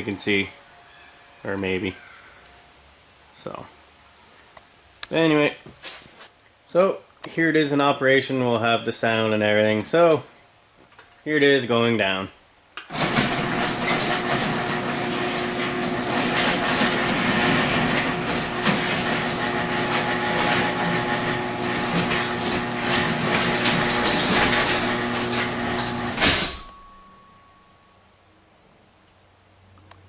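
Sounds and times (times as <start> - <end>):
chain and door rattle: 12.9 - 27.1
garage door opener motor hum: 12.9 - 27.4
door closing thud: 15.4 - 27.0.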